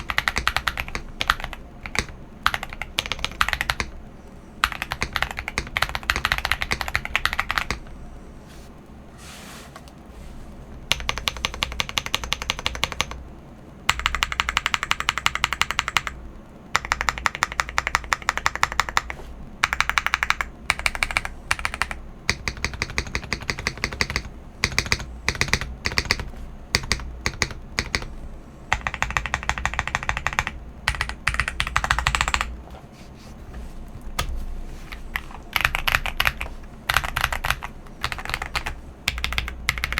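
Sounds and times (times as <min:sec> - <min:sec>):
mechanical keyboard keystroke clacks: 0:00.0 - 0:04.0, 0:04.6 - 0:07.9, 0:10.9 - 0:13.2, 0:13.9 - 0:28.1, 0:28.7 - 0:32.5, 0:34.9 - 0:39.9.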